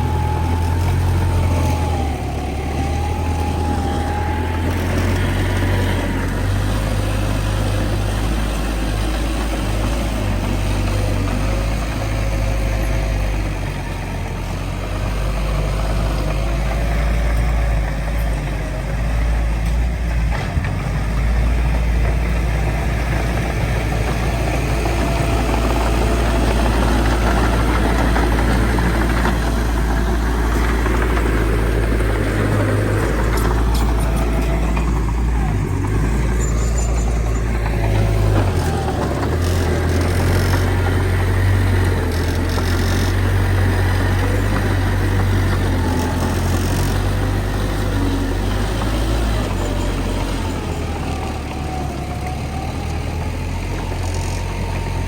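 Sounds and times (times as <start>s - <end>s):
heavy diesel engine rumbling: 0.0s - 55.0s.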